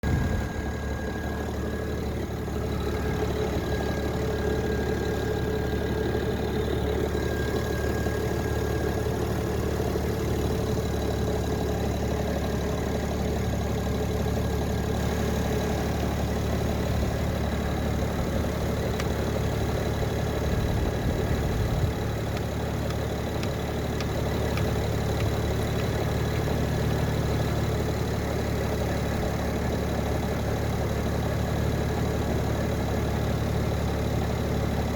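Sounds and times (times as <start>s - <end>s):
battery charger whine: 0.0s - 10.7s
car engine idling: 0.0s - 34.9s.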